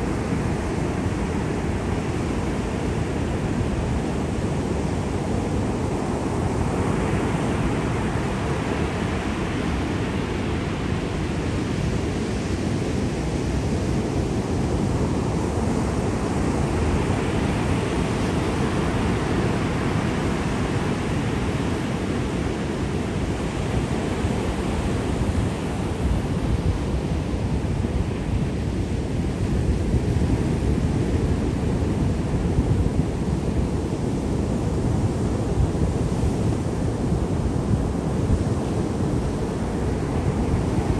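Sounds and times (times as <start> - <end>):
sea surf washing: 0.0 - 40.9
wind rumble on microphone: 0.0 - 40.9.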